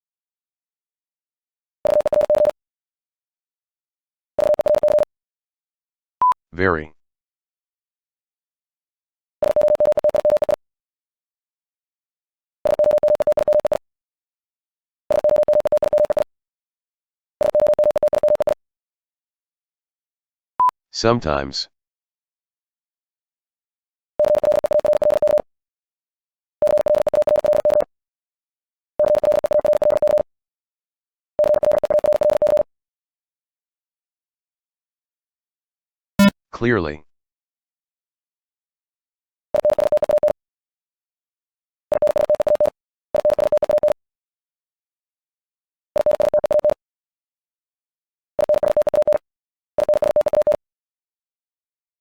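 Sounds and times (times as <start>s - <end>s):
morse code tone: 46.0s - 46.8s.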